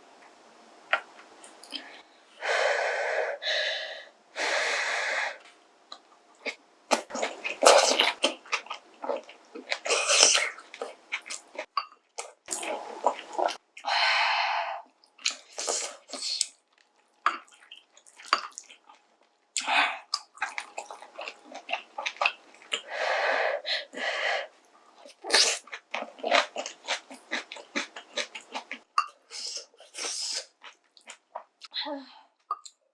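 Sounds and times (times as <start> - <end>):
wet chewing: 5.9 - 13.6, 15.0 - 22.9, 24.9 - 31.7.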